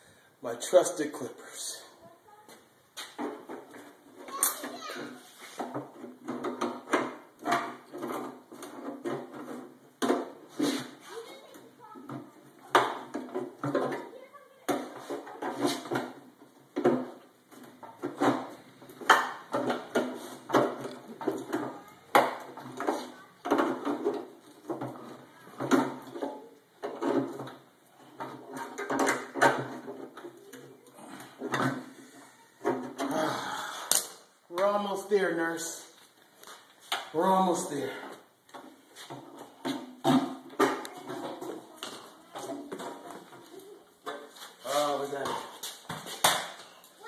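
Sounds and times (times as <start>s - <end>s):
clatter of hand tools and metal: 14.7s - 31.9s.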